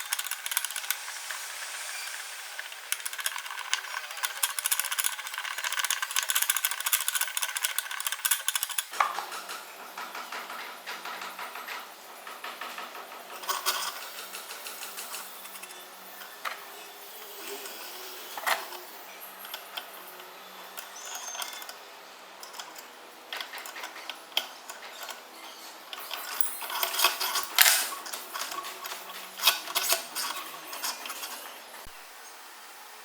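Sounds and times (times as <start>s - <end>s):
metal vise parts clinking and rattling: 19.4s - 21.8s, 22.4s - 31.6s.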